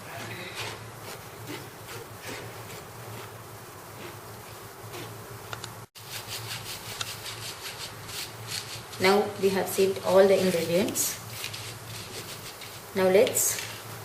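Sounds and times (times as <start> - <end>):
hand sieve rasping: 0.0 - 5.3, 6.0 - 9.2
steady low hum: 0.0 - 13.1.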